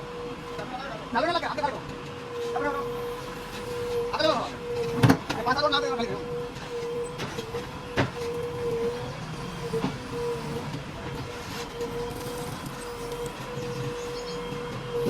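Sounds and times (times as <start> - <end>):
backhoe loader engine rumble: 0.0 - 15.0
steady high whine: 0.0 - 15.0.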